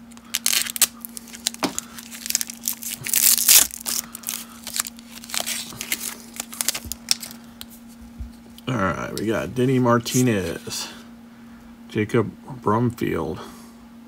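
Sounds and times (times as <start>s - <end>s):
wrapper crinkling and tearing: 0.0s - 7.7s
faint steady hum: 0.0s - 14.0s.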